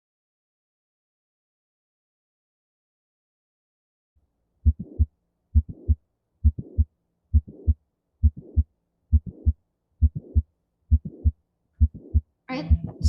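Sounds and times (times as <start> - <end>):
heartbeat: 4.6 - 13.0
heart murmur: 4.7 - 13.0.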